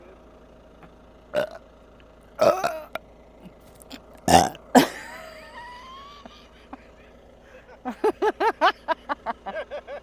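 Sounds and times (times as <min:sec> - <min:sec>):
woman burping: 0:01.4 - 0:01.6, 0:02.4 - 0:03.0, 0:04.3 - 0:05.4.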